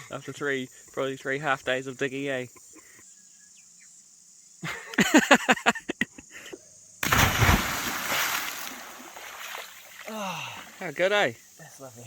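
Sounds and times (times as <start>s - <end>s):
big splash into water: 7.0s - 10.1s.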